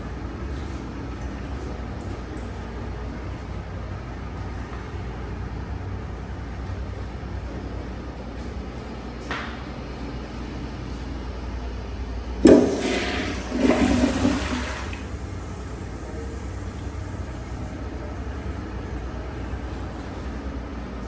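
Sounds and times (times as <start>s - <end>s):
toilet flushing: 12.4s - 20.1s.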